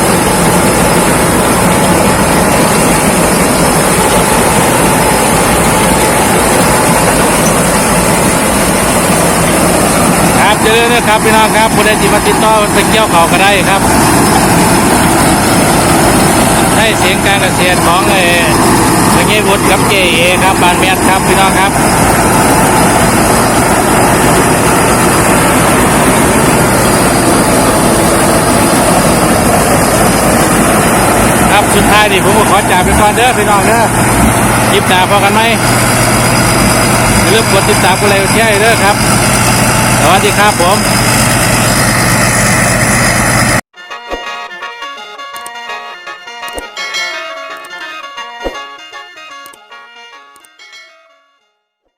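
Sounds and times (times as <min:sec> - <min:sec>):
combine harvester running: 0:00.0 - 0:49.6.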